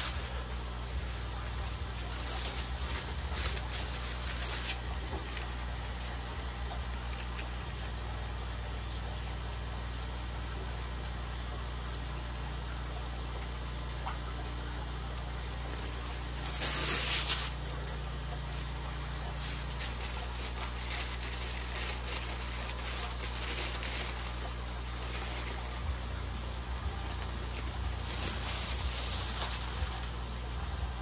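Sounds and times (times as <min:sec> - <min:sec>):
packaging rustling: 0:00.0 - 0:07.5, 0:16.1 - 0:17.7, 0:18.4 - 0:30.3
steady low hum: 0:00.0 - 0:31.0.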